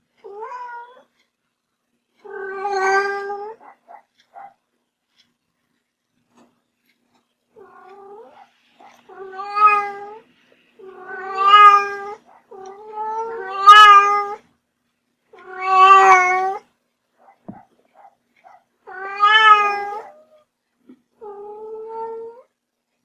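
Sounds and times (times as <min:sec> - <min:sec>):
cat meowing: 0:02.2 - 0:03.6, 0:07.6 - 0:10.2, 0:10.8 - 0:14.4, 0:15.4 - 0:16.7, 0:18.8 - 0:20.4.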